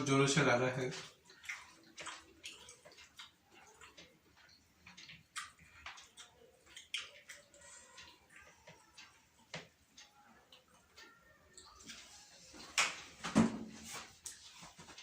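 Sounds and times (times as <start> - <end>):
wet mouth clicks and smacks: 1.3 - 7.6.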